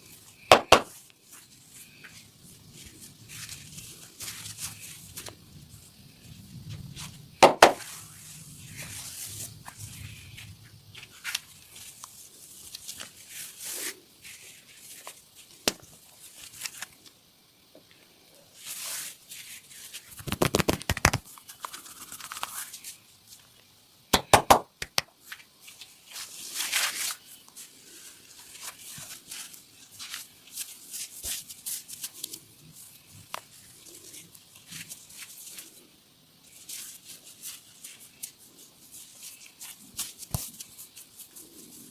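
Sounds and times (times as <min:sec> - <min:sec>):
hands rubbing skin and clothing: 0:00.1 - 0:17.2, 0:18.6 - 0:23.5, 0:24.2 - 0:41.9
rapid sharp slaps: 0:00.5 - 0:00.9, 0:07.4 - 0:07.9, 0:20.2 - 0:21.3, 0:24.1 - 0:25.1.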